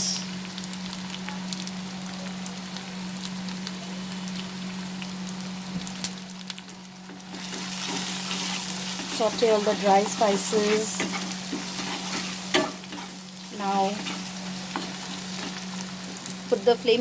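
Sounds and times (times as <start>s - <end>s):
food sizzling in hot oil: 0.0s - 17.0s
steady low hum: 2.7s - 17.0s.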